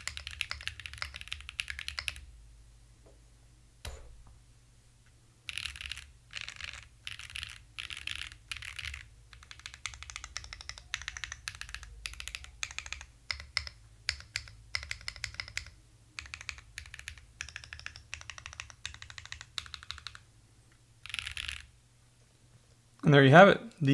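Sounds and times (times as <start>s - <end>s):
mechanical keyboard typing: 0.0s - 2.2s, 5.5s - 20.2s, 21.0s - 21.7s.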